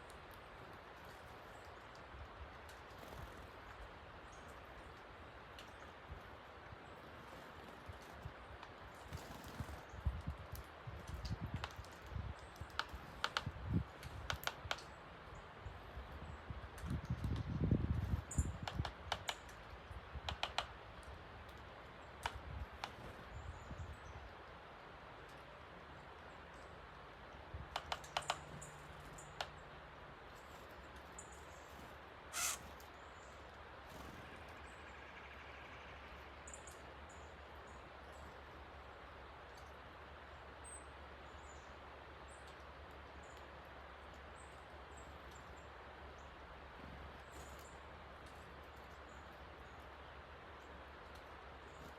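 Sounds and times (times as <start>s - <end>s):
birds clicking and tapping: 0.0s - 35.4s, 42.2s - 50.0s, 50.6s - 51.9s
faint high bird chirps: 31.1s - 33.4s.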